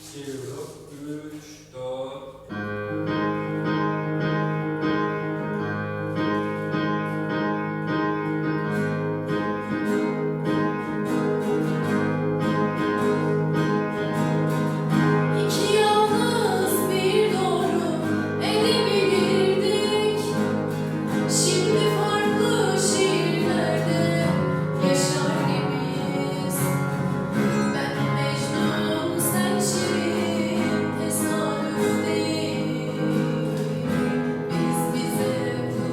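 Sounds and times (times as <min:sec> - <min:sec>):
instrumental accompaniment: 0:02.5 - 0:35.9
person singing: 0:15.3 - 0:35.9.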